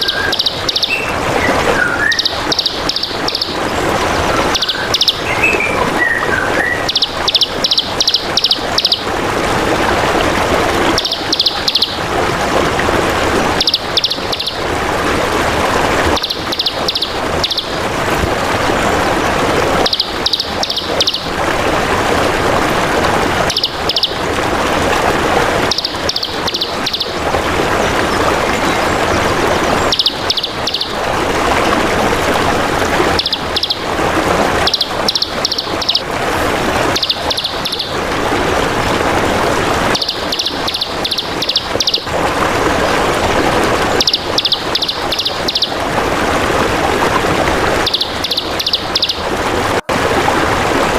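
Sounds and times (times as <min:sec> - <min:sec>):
songbird high chirps: 0:00.0 - 0:09.1, 0:11.0 - 0:12.0, 0:13.6 - 0:14.6, 0:16.1 - 0:17.8, 0:19.8 - 0:21.3, 0:23.5 - 0:24.2, 0:25.6 - 0:27.2, 0:28.1 - 0:31.0, 0:33.0 - 0:33.9, 0:34.6 - 0:36.1, 0:36.9 - 0:38.0, 0:39.9 - 0:42.1, 0:43.9 - 0:45.8, 0:47.8 - 0:49.2
trickling water: 0:00.0 - 0:50.9.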